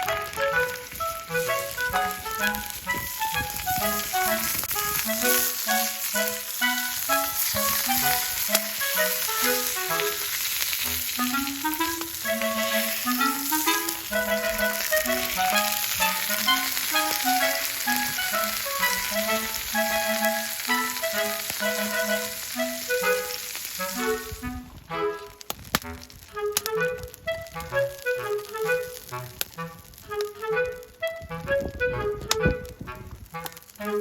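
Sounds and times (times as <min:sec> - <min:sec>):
food sizzling on a griddle: 0:00.0 - 0:24.6
clarinet melody music: 0:00.0 - 0:34.0.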